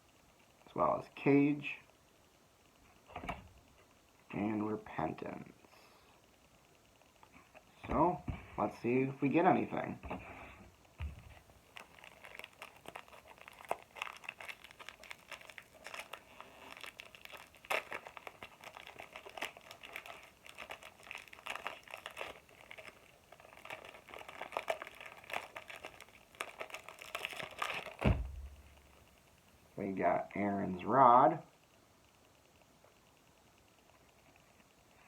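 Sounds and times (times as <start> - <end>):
wrapper crinkling and tearing: 11.3 - 29.2.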